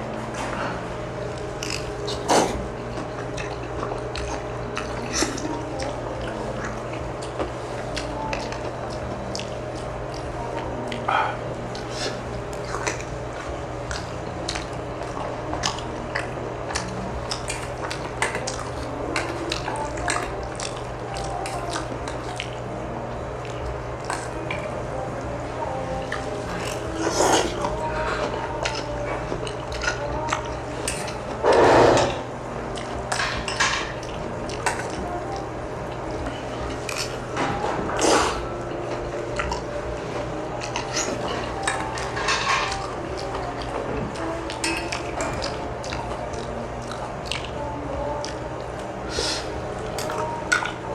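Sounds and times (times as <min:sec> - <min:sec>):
chewing: 0:00.1 - 0:50.9
loud noisy sounds: 0:30.9 - 0:38.6
utensils clinking against bowls: 0:32.8 - 0:35.0, 0:40.6 - 0:46.5, 0:49.9 - 0:50.9.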